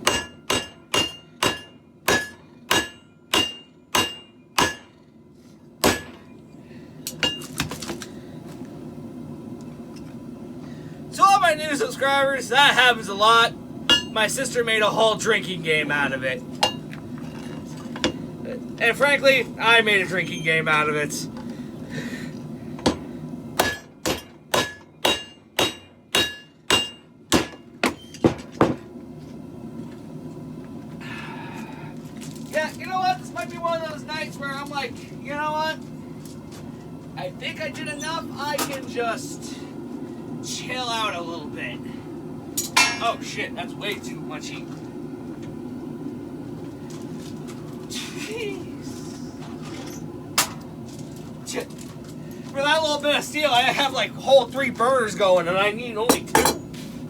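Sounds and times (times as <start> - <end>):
hammer striking hot steel on anvil: 0.0 - 5.0, 5.8 - 6.2, 7.1 - 7.5, 13.9 - 14.2, 23.6 - 28.8
forge humming: 0.0 - 57.0.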